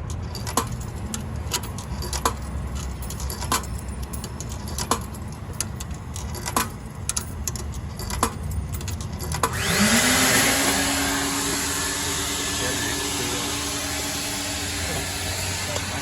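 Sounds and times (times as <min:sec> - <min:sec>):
vacuum motor whining: 0:09.5 - 0:16.0.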